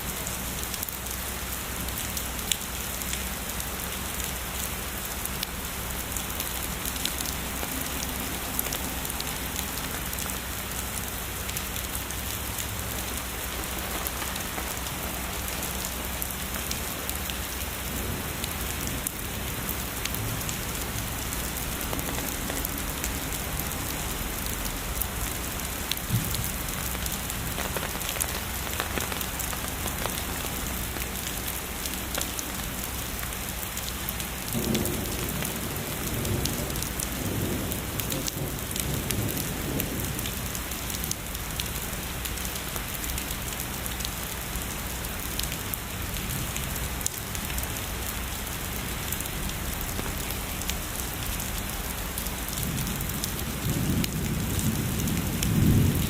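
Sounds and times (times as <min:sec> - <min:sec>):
heavy rain pattering: 0:00.0 - 0:56.0
distant thunder rumbling: 0:07.4 - 0:33.3, 0:52.6 - 0:56.0.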